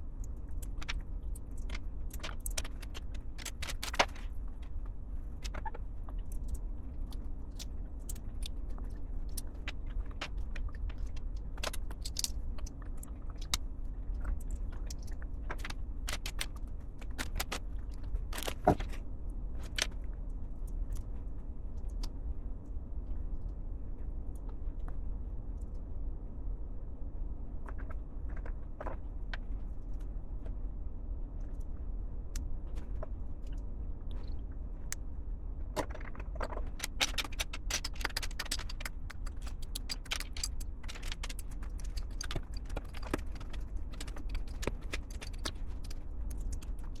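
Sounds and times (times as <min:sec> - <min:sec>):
steady low hum: 0:00.0 - 0:47.0
plastic pieces clicking and rattling: 0:35.8 - 0:46.9.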